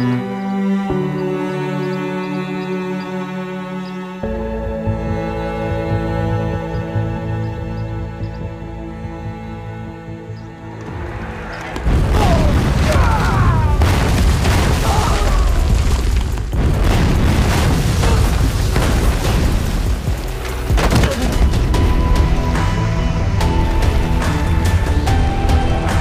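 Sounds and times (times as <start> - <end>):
dramatic film score: 0.0 - 26.0
blast and impact cracks: 10.8 - 21.8
booming explosion rumble: 11.6 - 21.7.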